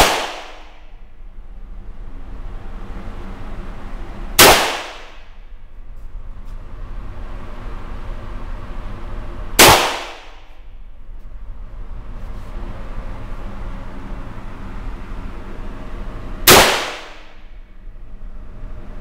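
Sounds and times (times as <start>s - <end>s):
handgun shots: 0.0s - 0.8s, 4.4s - 5.3s, 9.6s - 10.5s, 16.5s - 17.4s.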